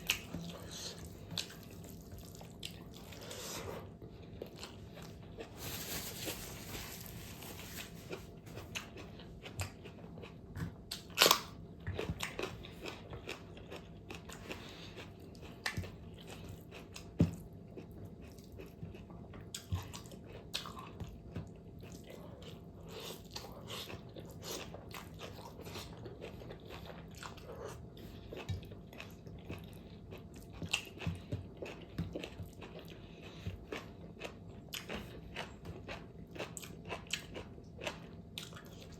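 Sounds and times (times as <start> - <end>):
person chewing and biting fat: 8.0 - 21.1, 21.8 - 38.9.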